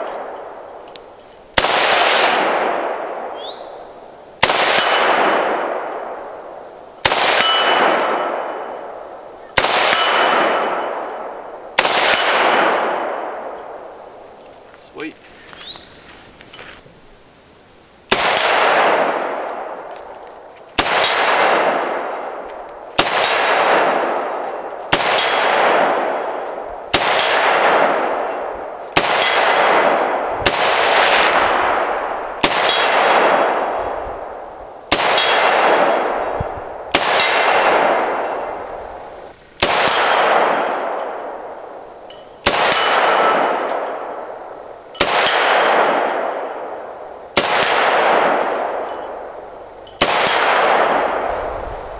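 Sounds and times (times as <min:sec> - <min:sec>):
gunshot echo ringing: 0:00.0 - 0:00.8, 0:01.5 - 0:14.2, 0:18.1 - 0:20.1, 0:20.8 - 0:51.9
rifle shots: 0:01.5 - 0:14.2, 0:18.1 - 0:20.1, 0:20.7 - 0:39.0, 0:39.6 - 0:41.8, 0:42.4 - 0:51.9.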